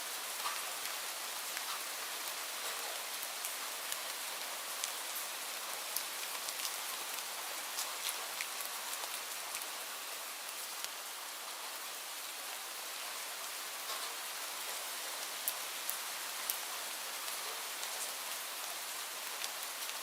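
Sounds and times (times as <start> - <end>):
light rain hissing: 0.0 - 20.0
raindrop ticks: 0.4 - 1.0, 1.6 - 4.1, 13.8 - 14.8.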